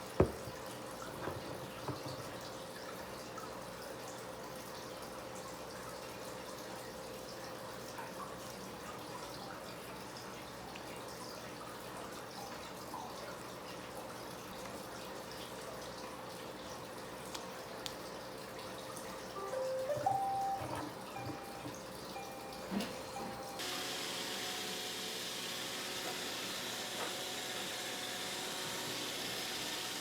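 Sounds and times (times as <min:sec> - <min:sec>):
water running from a tap: 0:00.0 - 0:07.0.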